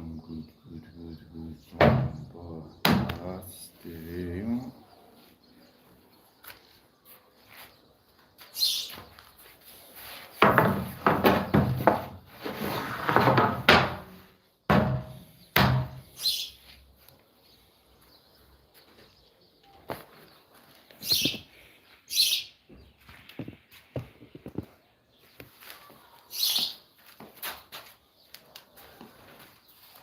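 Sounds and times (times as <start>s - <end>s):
sharp wooden knocks: 1.8s - 2.2s, 2.8s - 3.2s, 10.4s - 12.2s, 13.2s - 16.0s
wood scraping: 10.0s - 14.3s.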